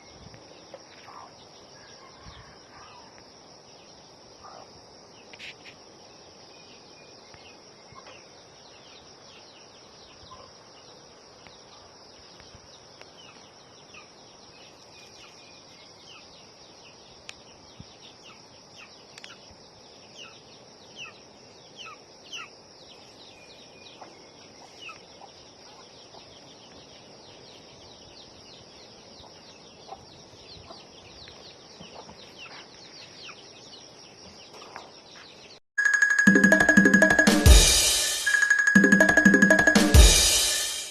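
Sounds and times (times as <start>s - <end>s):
insects droning: 0.0s - 32.2s.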